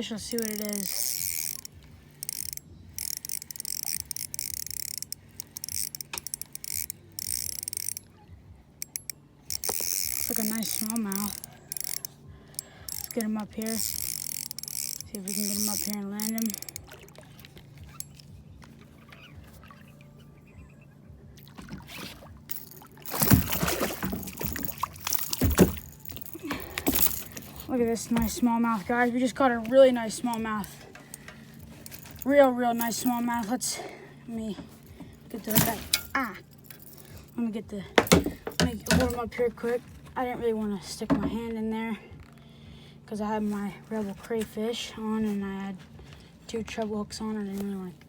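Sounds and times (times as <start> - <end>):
fishing reel ticking: 0.0 - 8.1, 8.8 - 19.9, 22.5 - 33.7
water splashing: 15.8 - 20.2, 21.4 - 31.3.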